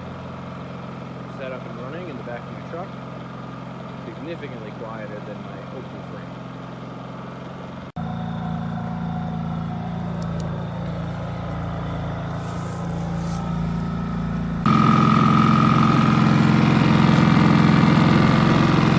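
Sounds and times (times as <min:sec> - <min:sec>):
generator engine running: 0:00.0 - 0:18.9
generator whine: 0:00.0 - 0:18.9.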